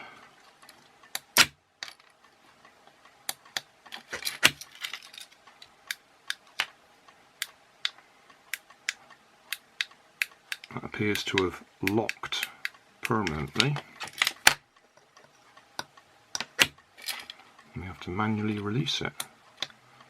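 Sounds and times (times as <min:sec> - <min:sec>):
sharp mechanical clicks: 0:05.4 - 0:14.8.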